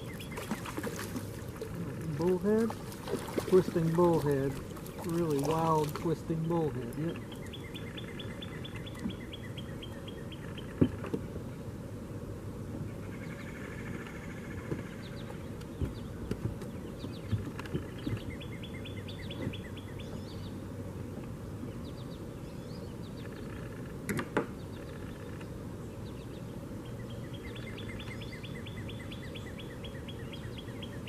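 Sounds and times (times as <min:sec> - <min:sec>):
songbird trilling: 0:00.0 - 0:01.1, 0:03.4 - 0:10.8, 0:16.7 - 0:20.6, 0:24.6 - 0:31.0
outdoor background noise: 0:00.0 - 0:31.0.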